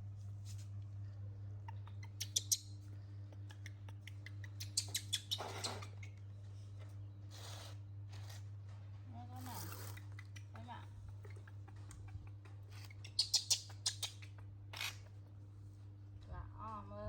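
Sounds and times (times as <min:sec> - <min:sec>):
low electrical hum: 0:00.0 - 0:17.0
monkey eating clicks and rustles: 0:09.3 - 0:15.3.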